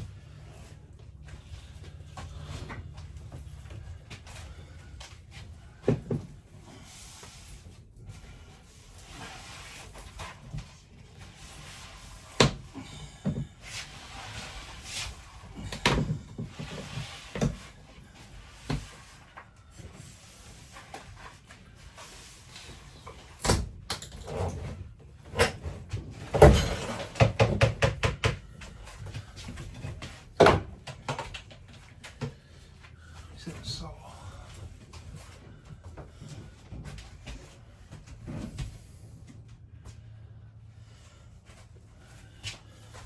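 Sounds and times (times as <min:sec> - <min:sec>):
wooden panels knocking and clattering: 0:25.3 - 0:28.6.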